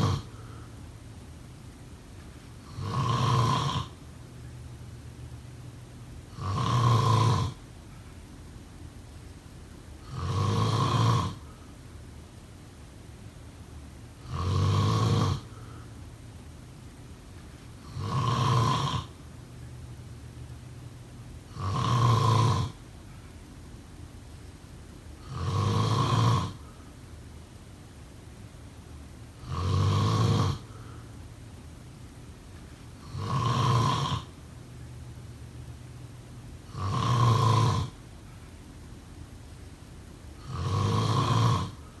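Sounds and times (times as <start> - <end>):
person snoring: 0.0 - 0.7, 2.6 - 4.0, 6.3 - 7.6, 10.0 - 11.6, 14.2 - 15.8, 17.8 - 19.2, 21.5 - 22.8, 25.2 - 26.7, 29.4 - 31.0, 33.0 - 34.4, 36.7 - 38.0, 40.4 - 42.0.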